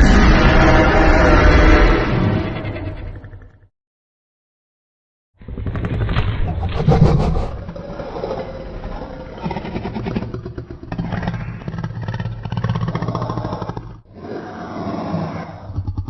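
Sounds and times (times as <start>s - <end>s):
creature rattling growl: 5.4s - 16.0s.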